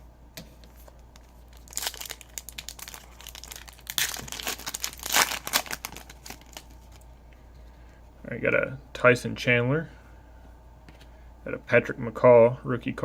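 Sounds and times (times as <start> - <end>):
wrapper crinkling: 0.8 - 7.1.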